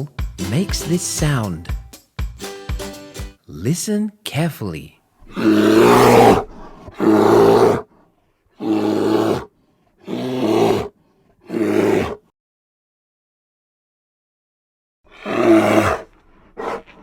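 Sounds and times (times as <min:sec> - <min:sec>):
bear growling and roaring: 0:05.2 - 0:07.9, 0:08.6 - 0:12.3, 0:15.1 - 0:17.0.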